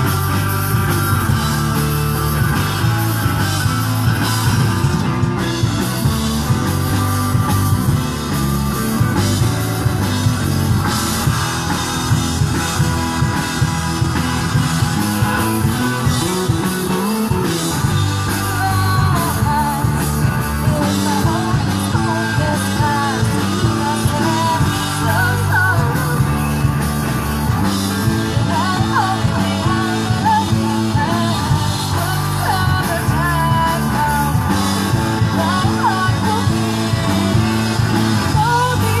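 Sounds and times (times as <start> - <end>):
bass guitar: 0.0 - 39.0
drum kit: 0.0 - 39.0
electric guitar: 0.0 - 39.0.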